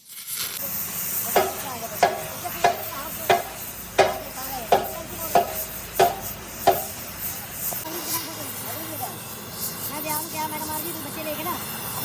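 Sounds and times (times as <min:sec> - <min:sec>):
metal being struck: 0:01.4 - 0:07.3.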